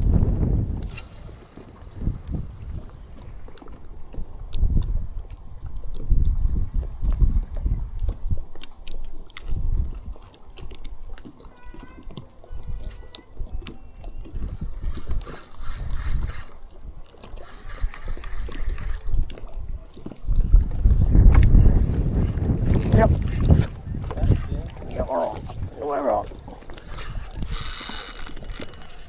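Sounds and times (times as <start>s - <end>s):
wind rumbling on microphone: 0.0s - 10.2s, 18.4s - 27.6s
small clicks: 27.4s - 29.0s.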